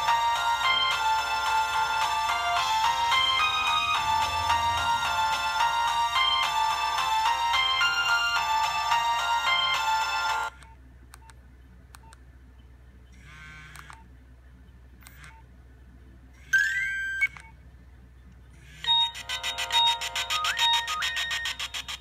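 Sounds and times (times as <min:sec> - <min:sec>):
electronic ringtone melody: 0:00.0 - 0:10.6, 0:16.5 - 0:17.4, 0:18.8 - 0:22.0
ringtone with fast repeated notes: 0:00.0 - 0:10.6, 0:16.4 - 0:17.4, 0:18.6 - 0:22.0
short rising electronic tone: 0:03.4 - 0:05.4.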